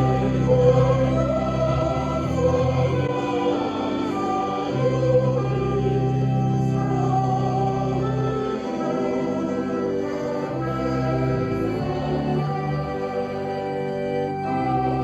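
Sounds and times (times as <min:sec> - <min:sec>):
choir singing held chords: 0:00.0 - 0:15.0.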